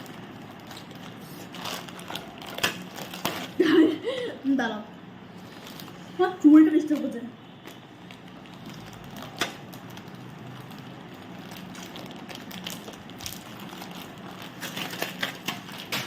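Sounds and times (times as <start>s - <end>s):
plastic packet rustling: 0.0s - 4.0s, 5.3s - 16.0s.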